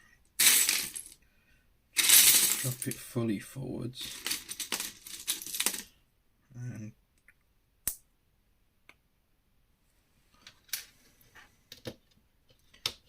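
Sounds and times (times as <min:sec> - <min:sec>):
plastic pieces rustling: 0:00.4 - 0:01.2, 0:02.0 - 0:03.0, 0:04.0 - 0:05.9.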